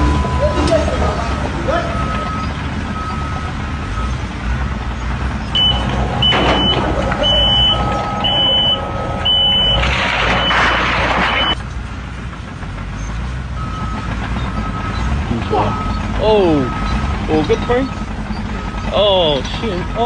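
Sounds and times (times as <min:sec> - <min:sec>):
faint backup alarm beeping: 0:00.0 - 0:04.3, 0:05.5 - 0:11.6, 0:14.6 - 0:20.0
heavy vehicle engine running: 0:00.0 - 0:20.0
high-pitched backup alarm beeping: 0:05.5 - 0:11.6, 0:14.6 - 0:19.1.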